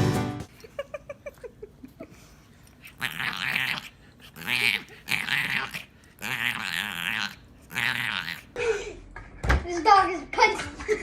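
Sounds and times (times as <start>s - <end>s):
dog growling: 2.8s - 8.6s.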